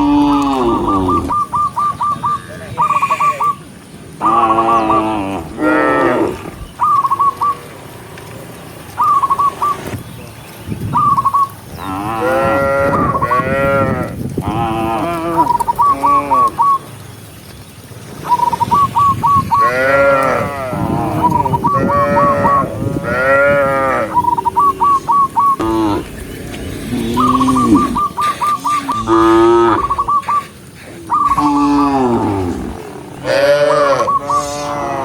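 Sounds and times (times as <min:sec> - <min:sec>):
cattle mooing: 0:00.0 - 0:01.4, 0:04.2 - 0:06.6, 0:11.8 - 0:16.6, 0:19.6 - 0:35.0.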